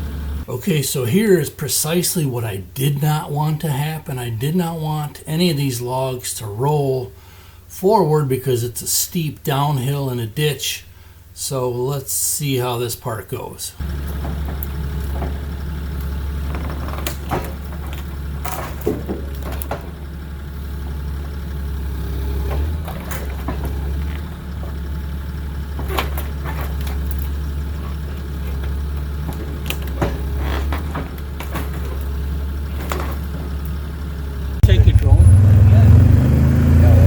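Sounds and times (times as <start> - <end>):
engine running at low pitch: 0.0 - 0.5, 13.8 - 37.0
logs knocking: 13.8 - 35.2.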